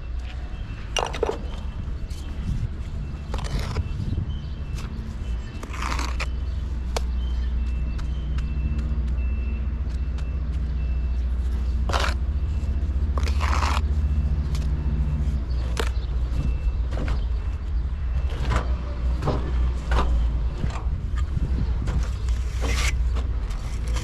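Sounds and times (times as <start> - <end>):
knocks and scrapes: 18.3 - 24.0.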